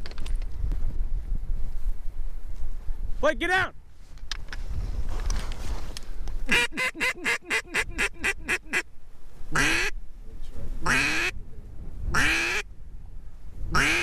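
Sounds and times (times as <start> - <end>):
wind rumble on microphone: 0.0 - 6.6, 7.5 - 14.0
duck call quacks: 6.5 - 8.9, 9.6 - 9.9, 10.8 - 11.3, 12.1 - 12.6, 13.7 - 14.0.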